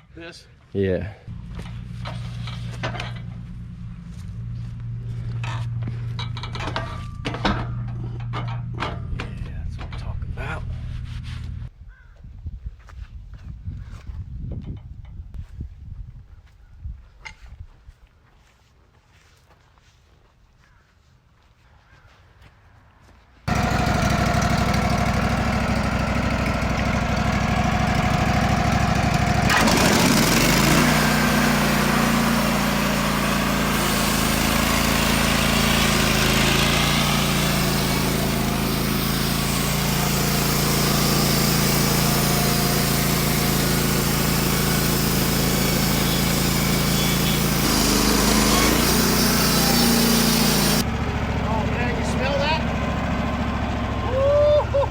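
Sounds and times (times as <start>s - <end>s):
sawmill engine running: 23.5s - 54.9s.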